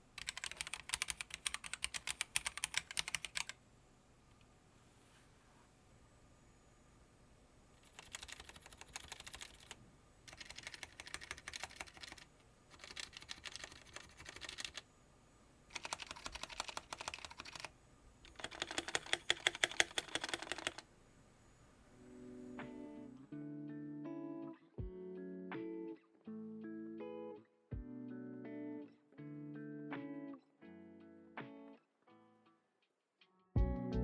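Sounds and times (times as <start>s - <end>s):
mechanical keyboard typing: 0.2s - 3.6s, 7.8s - 14.8s, 15.7s - 17.7s, 18.3s - 20.8s.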